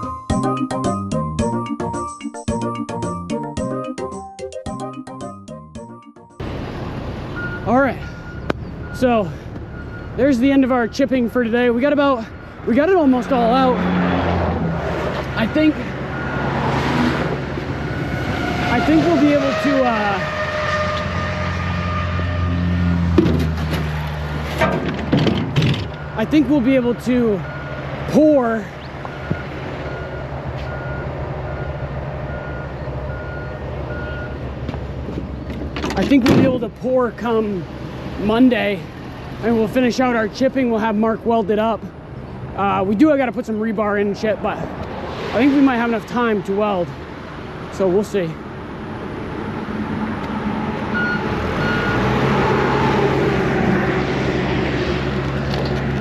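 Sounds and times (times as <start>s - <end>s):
diesel vehicle running: 0.0s - 56.0s
vehicle backup alarm beeping: 5.2s - 13.4s, 15.2s - 16.8s, 25.8s - 34.5s, 50.9s - 52.1s
engine rumble: 6.4s - 56.0s.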